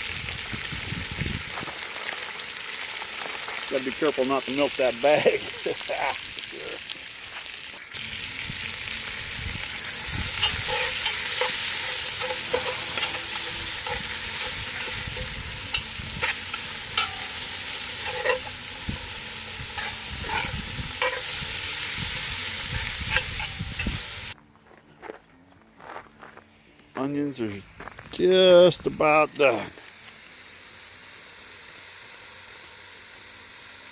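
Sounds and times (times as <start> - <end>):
onion sizzling in fat: 0.0 - 24.4, 26.4 - 33.9
utensil scraping pot: 9.6 - 24.4.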